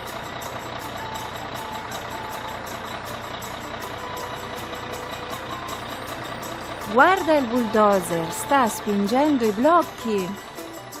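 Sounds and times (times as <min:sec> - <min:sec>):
bulldozer engine running: 0:00.0 - 0:11.0.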